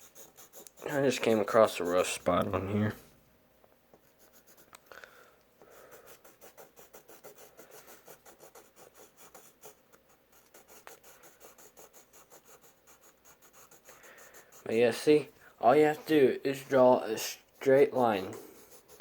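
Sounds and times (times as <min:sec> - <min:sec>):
drawing tool scratching on paper: 0:00.0 - 0:02.5, 0:04.0 - 0:04.7, 0:05.7 - 0:15.1, 0:17.6 - 0:19.0.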